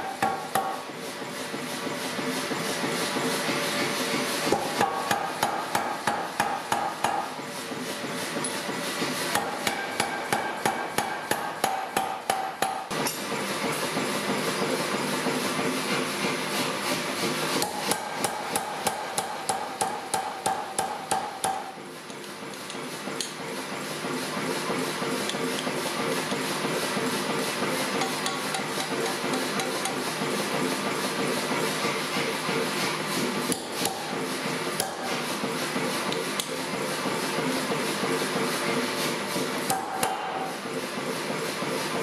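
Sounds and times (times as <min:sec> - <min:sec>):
power hammer striking steel: 0:00.0 - 0:01.0, 0:04.4 - 0:07.4, 0:08.3 - 0:13.8, 0:17.6 - 0:23.4, 0:27.3 - 0:30.3, 0:33.4 - 0:36.6, 0:39.5 - 0:40.5.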